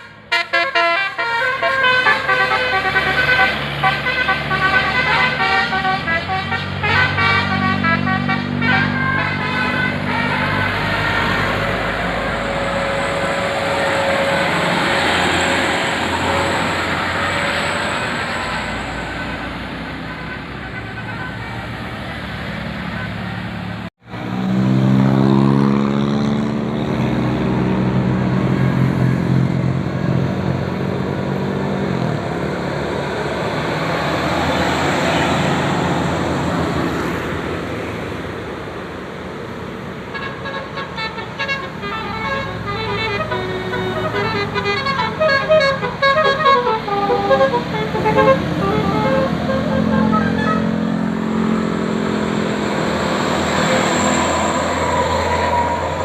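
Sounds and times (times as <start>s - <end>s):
musical bus horn tune: 0.0s - 21.9s, 40.1s - 51.6s
bus engine droning: 0.0s - 56.0s
roadside traffic: 0.0s - 56.0s.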